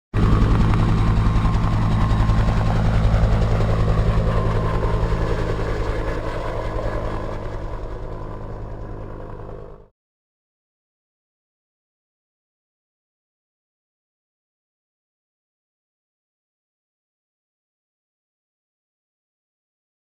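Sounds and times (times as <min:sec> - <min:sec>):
helicopter rotor and engine: 0:00.2 - 0:09.9.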